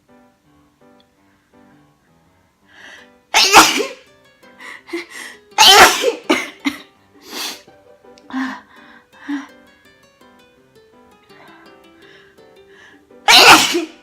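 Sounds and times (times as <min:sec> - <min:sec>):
quiet background music: 0:00.0 - 0:14.0
weak breathy sounds: 0:02.7 - 0:03.2, 0:07.2 - 0:09.7, 0:11.2 - 0:13.2
woman sneezing loudly: 0:03.3 - 0:04.0, 0:05.6 - 0:06.7, 0:13.3 - 0:14.0.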